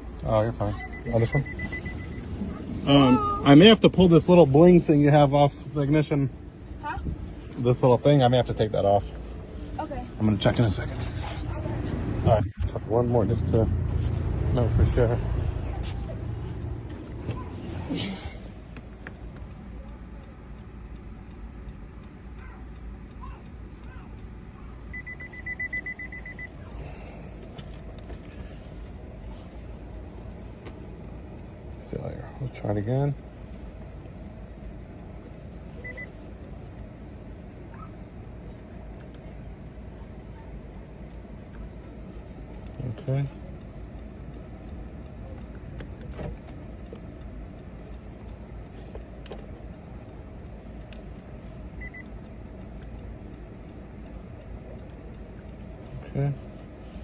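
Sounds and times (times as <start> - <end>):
low hum inside car: 0.0 - 57.0
rapid high electronic beeps: 0.8 - 2.2, 24.9 - 26.5.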